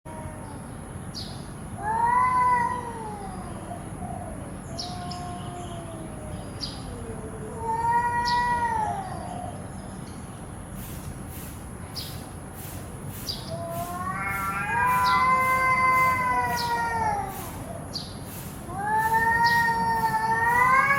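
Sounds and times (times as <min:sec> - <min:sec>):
cat meowing: 0:00.1 - 0:00.6, 0:01.8 - 0:09.6, 0:13.4 - 0:17.8, 0:18.6 - 0:20.9.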